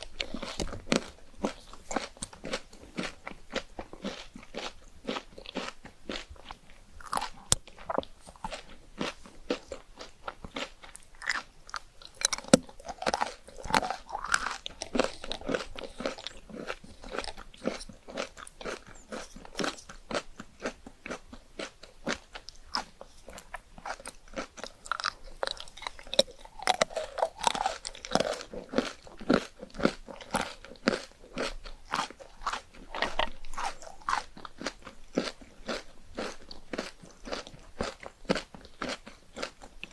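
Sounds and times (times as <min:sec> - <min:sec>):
ice cream crunching: 0:00.0 - 0:39.9
wet chewing: 0:00.0 - 0:39.9.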